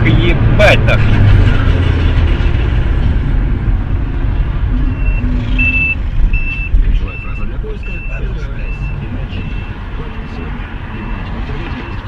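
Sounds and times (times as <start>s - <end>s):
road noise: 0.0s - 12.0s
vehicle engine rumble: 0.0s - 12.0s
high electronic beep: 4.7s - 9.8s.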